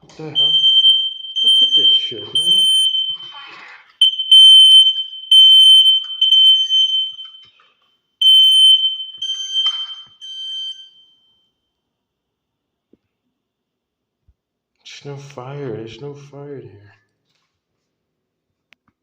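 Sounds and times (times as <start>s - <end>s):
fire alarm beeping: 0.0s - 11.8s.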